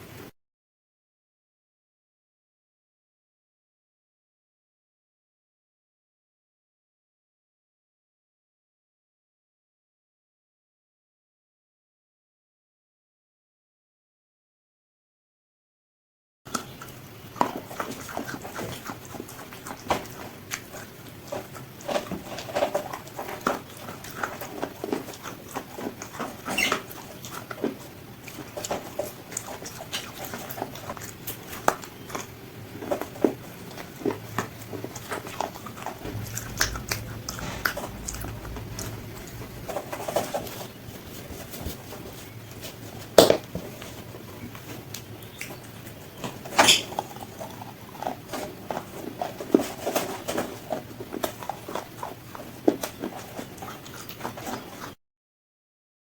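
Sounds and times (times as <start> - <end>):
chewing crispy fried chicken: 16.5 - 55.0.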